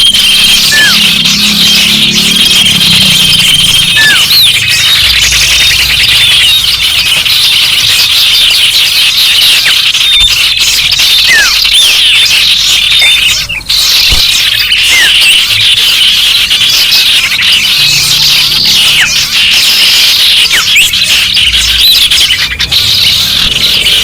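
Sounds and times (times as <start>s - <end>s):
falling whistled bird notes: 0.0s - 9.6s
garden birds chirping and chattering: 0.0s - 24.0s.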